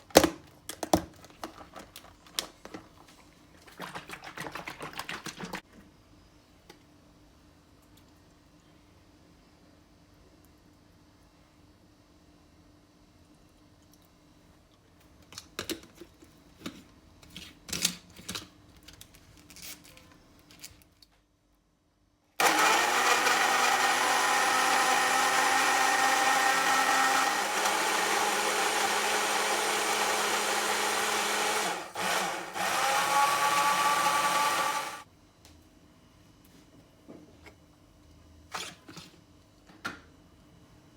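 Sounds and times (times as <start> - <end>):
small appliance motor running: 22.4 - 35.0.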